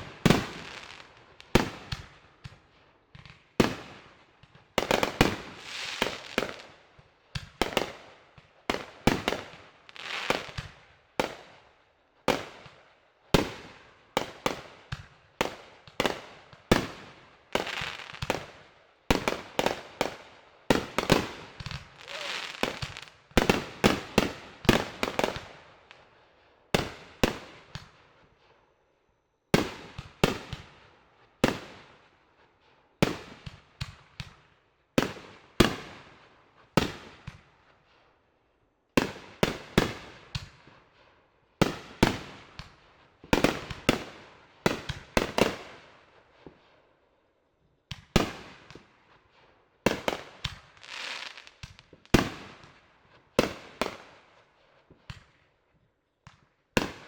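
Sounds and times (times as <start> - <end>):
fireworks bangs: 19.1 - 25.5.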